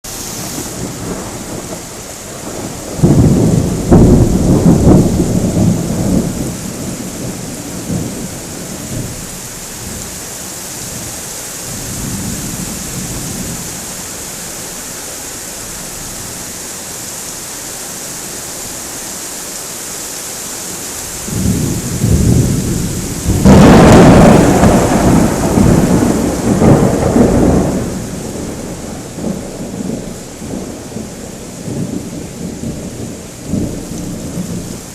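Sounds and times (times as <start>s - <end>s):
rain falling: 0.0s - 34.9s
thunder rumbling: 0.1s - 14.0s, 21.1s - 34.9s.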